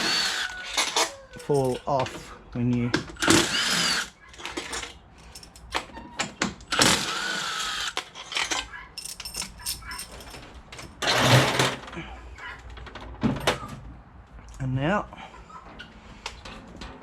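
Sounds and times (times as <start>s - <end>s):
metal hardware clanking and scraping: 0.7s - 3.2s, 4.3s - 6.7s, 8.1s - 13.7s, 15.6s - 17.0s.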